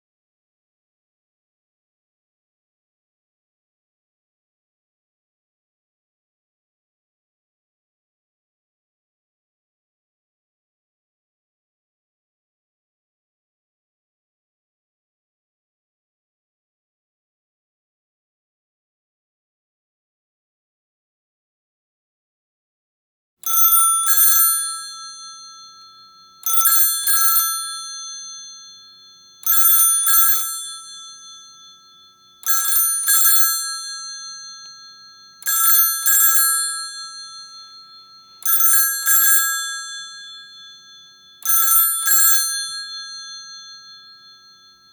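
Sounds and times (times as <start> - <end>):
timer alarm ringing: 23.5 - 44.9.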